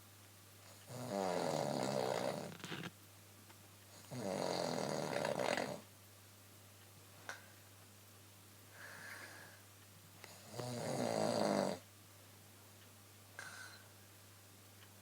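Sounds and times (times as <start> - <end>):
woman snoring: 0.8 - 2.8, 4.1 - 5.8, 10.4 - 11.8.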